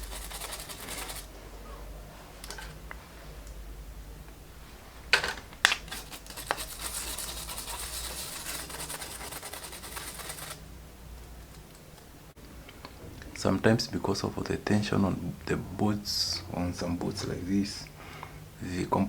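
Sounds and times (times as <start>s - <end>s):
scratchy scrubbing on circuit board: 0.0s - 1.3s, 5.9s - 10.6s.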